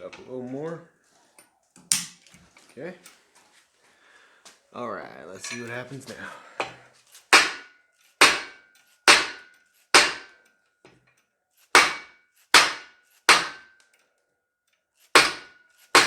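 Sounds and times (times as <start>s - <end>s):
hammer striking metal: 6.6s - 10.4s, 11.7s - 13.8s, 15.1s - 16.0s.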